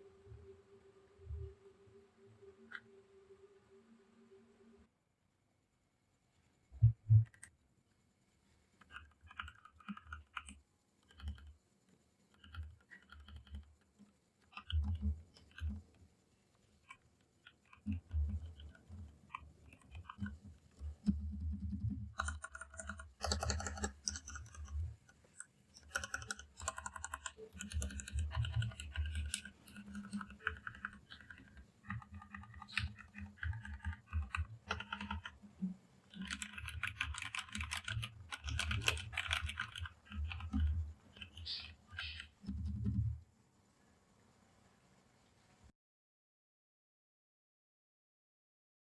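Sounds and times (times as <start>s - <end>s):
mechanical keyboard typing: 8.8s - 11.6s, 12.3s - 13.8s, 14.4s - 15.9s, 16.8s - 24.9s, 25.7s - 35.4s, 36.1s - 43.0s.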